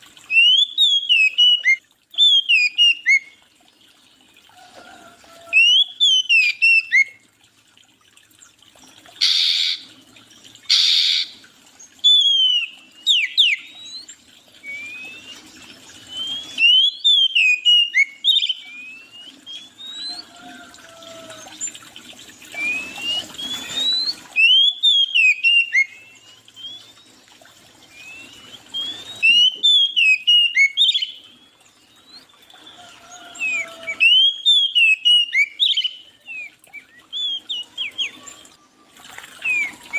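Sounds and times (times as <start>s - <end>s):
songbirds chirping: 0.0s - 7.3s, 8.0s - 39.9s
harsh rasping bird calls: 9.2s - 10.0s, 10.7s - 21.8s.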